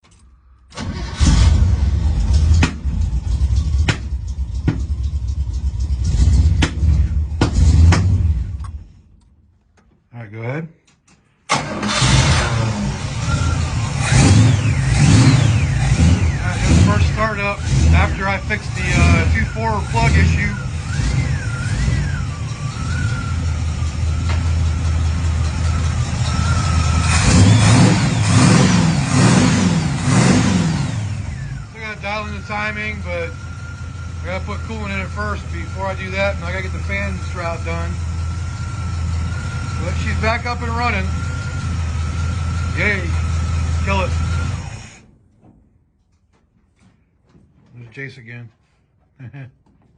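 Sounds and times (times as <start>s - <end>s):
car engine running rough: 0.8s - 8.9s, 11.5s - 45.0s
engine misfire pops: 2.4s - 5.4s, 6.3s - 8.9s.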